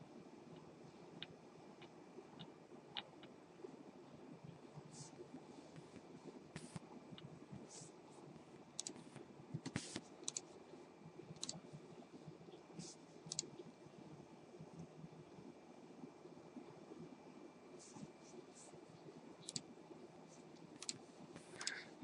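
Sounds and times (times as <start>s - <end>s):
keyboard and mouse clicks: 8.8s - 10.5s, 11.4s - 11.6s, 13.3s - 13.5s, 19.4s - 19.7s, 20.8s - 21.8s.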